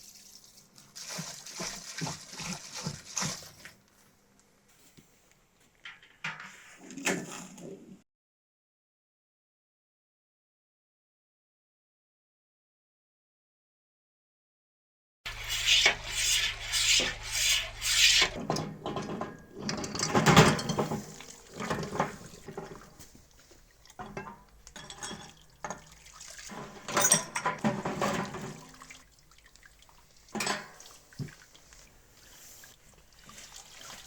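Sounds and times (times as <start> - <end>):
rubbing and scraping metal: 15.3 - 23.2, 26.5 - 28.7
scrubbing metal parts: 15.3 - 28.9.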